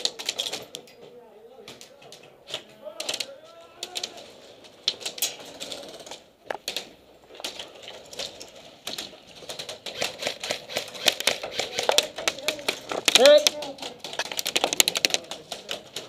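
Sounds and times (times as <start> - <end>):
airsoft guns firing: 9.5 - 15.4.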